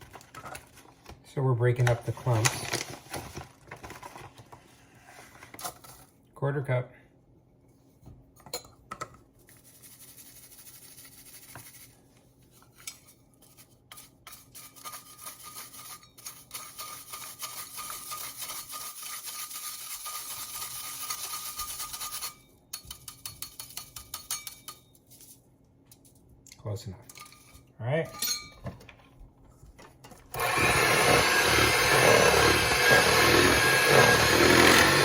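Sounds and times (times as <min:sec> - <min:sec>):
sugar sifting rasp: 0:13.4 - 0:22.4, 0:30.4 - 0:35.0.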